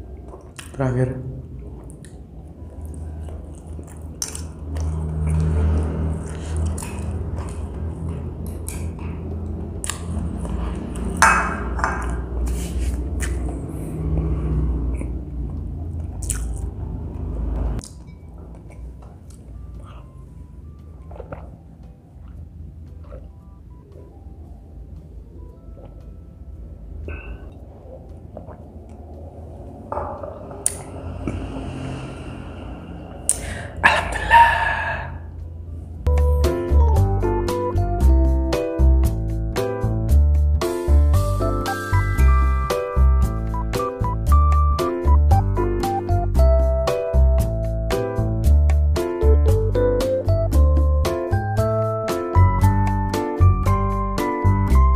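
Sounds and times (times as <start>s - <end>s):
close eating noises: 0.0s - 16.8s, 17.8s - 24.1s, 27.1s - 29.9s
chewing and wet mouth clicks: 0.1s - 0.8s, 1.8s - 11.1s, 13.1s - 14.3s, 15.0s - 16.7s, 21.0s - 24.0s, 27.1s - 29.3s
mouth smack: 11.3s - 13.6s
low hum: 22.5s - 38.2s
short vocal sound: 31.0s - 35.3s.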